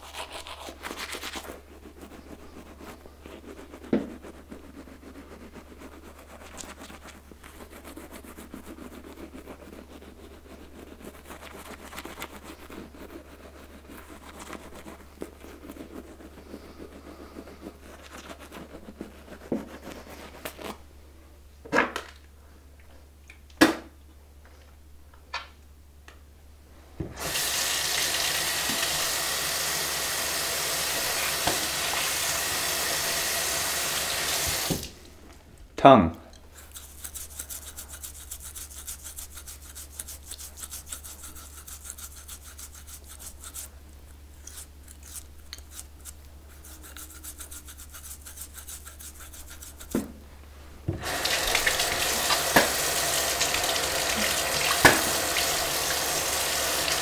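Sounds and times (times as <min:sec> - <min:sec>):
toothbrush scrubbing teeth: 0:00.0 - 0:20.8, 0:27.2 - 0:34.7, 0:36.4 - 0:50.0, 0:51.0 - 0:57.0
tap water running into sink: 0:27.1 - 0:35.0, 0:50.9 - 0:57.0.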